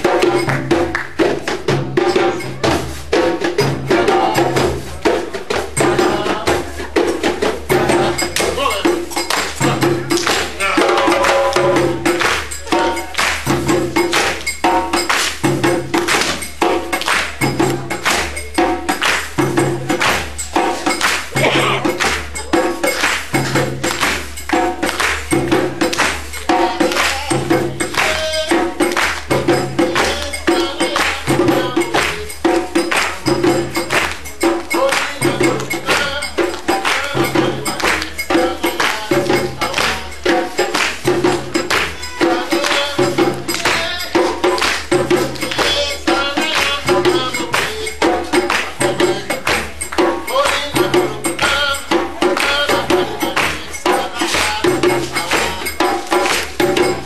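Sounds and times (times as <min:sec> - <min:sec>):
live percussion music: 0:00.0 - 0:57.0.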